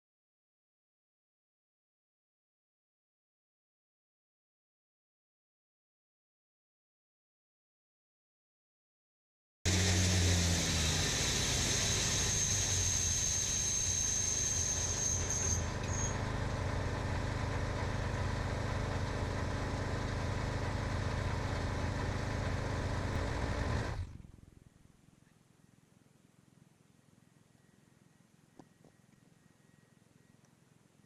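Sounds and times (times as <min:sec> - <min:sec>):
band blade whine: 0:09.7 - 0:16.5, 0:21.5 - 0:24.6
sawmill engine running: 0:09.7 - 0:24.5.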